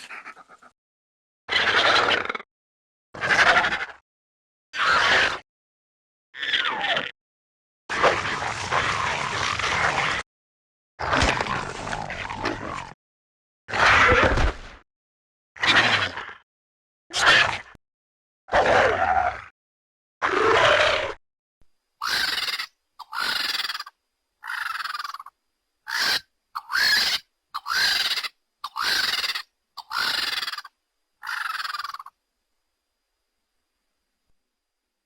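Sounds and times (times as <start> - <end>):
raspy dinosaur cries: 22.0 - 25.3, 25.9 - 32.1
shrill chirping cries: 22.0 - 25.3, 25.9 - 32.1.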